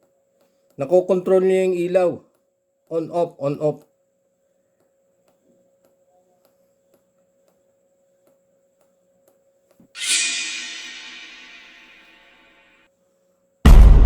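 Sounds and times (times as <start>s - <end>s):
transition sound effect: 10.0s - 12.2s.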